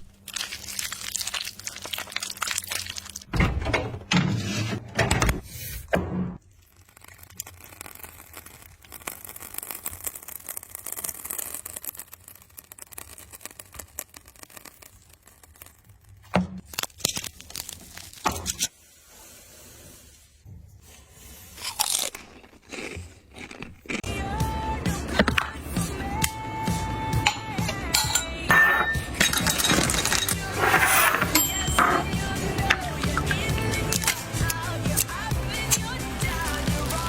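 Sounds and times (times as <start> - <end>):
crackling and crunching: 0.0 - 3.3, 6.4 - 18.7, 21.6 - 24.1, 29.3 - 37.0.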